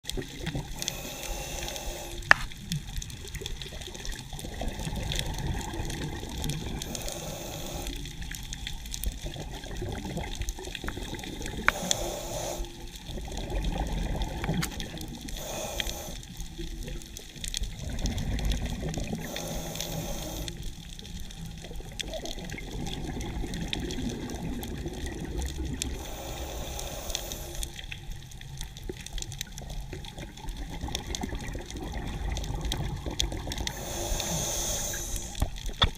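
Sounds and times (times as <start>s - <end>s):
exhaled bubbles: 0.0s - 35.9s
diver regulator breathing: 0.7s - 2.6s, 6.4s - 8.5s, 11.6s - 13.1s, 15.2s - 16.7s, 19.1s - 21.0s, 25.8s - 28.0s, 33.6s - 35.6s.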